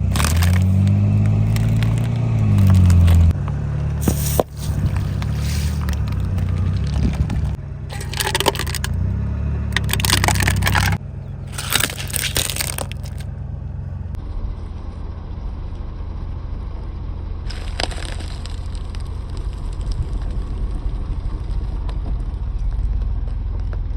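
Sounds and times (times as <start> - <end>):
tyre crushing crunchy objects: 0.0 - 9.1, 9.7 - 13.3, 17.5 - 20.7
low rumble of car: 0.0 - 23.9.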